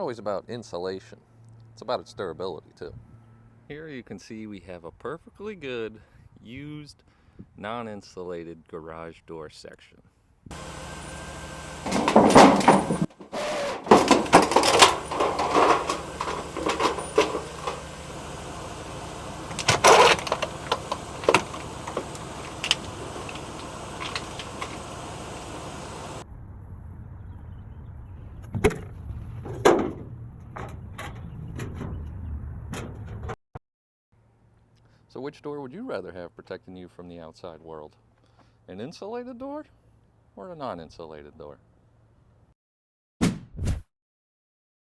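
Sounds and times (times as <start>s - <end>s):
pickup truck engine running: 10.5s - 26.2s
steel panels crunching and creaking: 10.5s - 26.2s.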